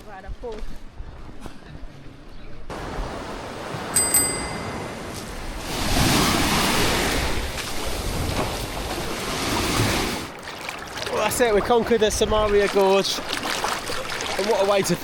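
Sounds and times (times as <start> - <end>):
sea waves washing ashore: 2.7 - 15.0
high metallic ding: 3.9 - 5.0.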